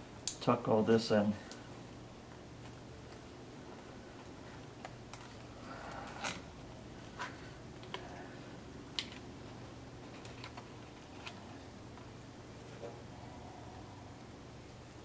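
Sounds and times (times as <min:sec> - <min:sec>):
low steady hum: 0:00.0 - 0:15.0
clicks and rustles of wires: 0:07.1 - 0:08.1, 0:08.9 - 0:09.3, 0:10.0 - 0:13.0.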